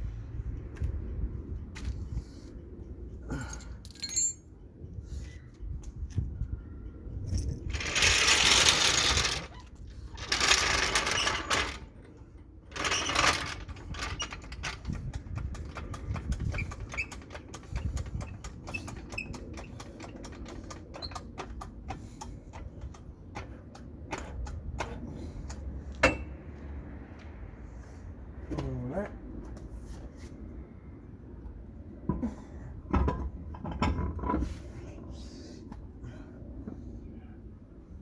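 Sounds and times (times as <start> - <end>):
hand tools clinking on metal: 3.3 - 4.5.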